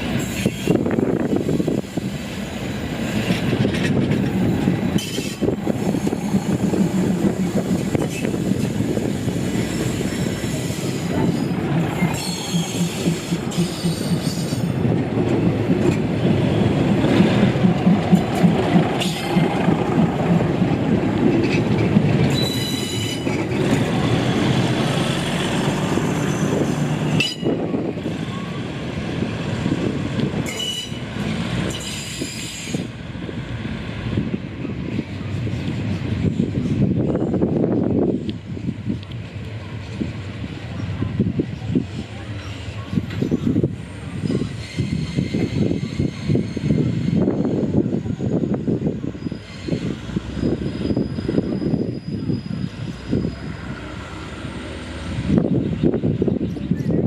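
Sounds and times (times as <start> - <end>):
train rumbling on rails: 0.0 - 57.0
wheels squealing on track: 22.3 - 23.7, 42.4 - 47.7, 49.0 - 53.8.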